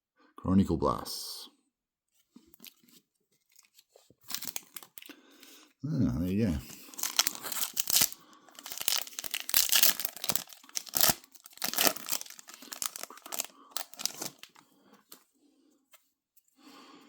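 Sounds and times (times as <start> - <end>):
wrapper being torn and crinkled: 3.5 - 5.1, 6.7 - 14.6.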